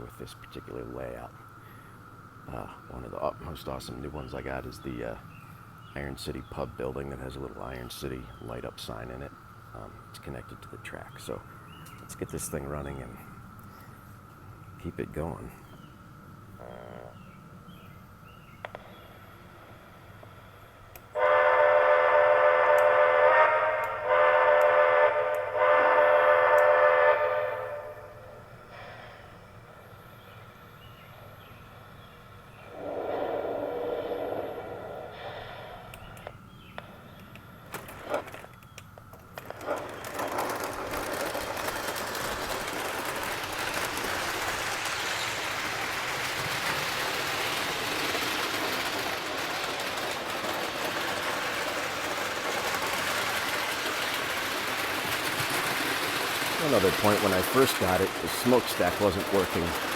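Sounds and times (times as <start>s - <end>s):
model train rolling on track: 0.0s - 32.9s, 34.6s - 59.9s
model train steam whistle: 21.1s - 28.2s.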